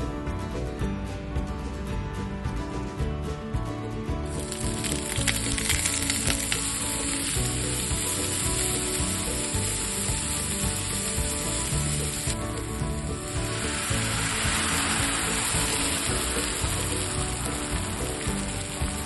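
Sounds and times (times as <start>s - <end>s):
soft background music: 0.0s - 19.0s
food sizzling in a pan: 4.3s - 19.0s.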